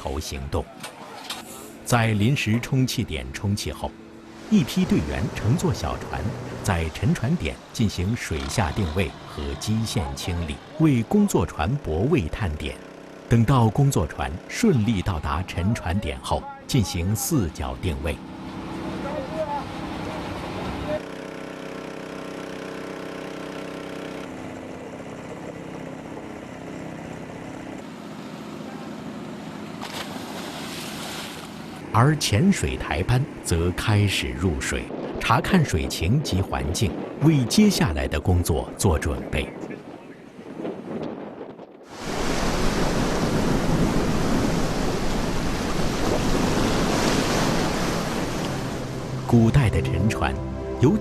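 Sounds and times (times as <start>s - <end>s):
sea waves rushing: 0.0s - 21.0s, 29.7s - 40.9s, 41.9s - 51.0s
boat engine humming: 0.0s - 40.6s, 41.9s - 51.0s
wind at sea: 29.8s - 49.3s.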